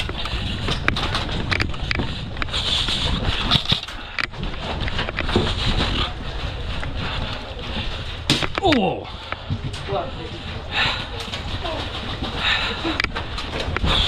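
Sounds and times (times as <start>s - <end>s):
sharp clicks and knocks: 0.0s - 6.2s, 6.8s - 9.9s
wind rushing on microphone: 0.0s - 14.0s.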